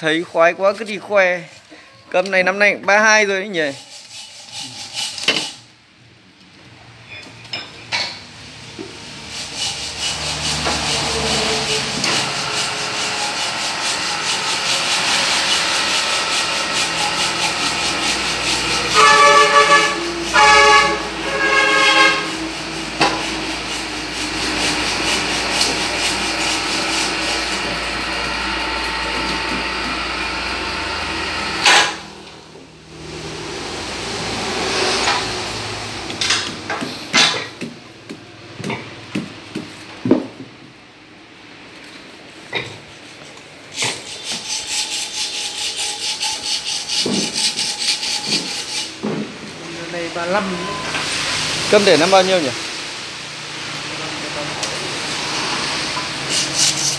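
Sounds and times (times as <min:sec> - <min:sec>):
rubbing and scraping on motor windings: 0:03.0 - 0:05.7, 0:09.2 - 0:30.6, 0:56.3 - 0:56.9
honk-like pitched tones: 0:18.7 - 0:23.2.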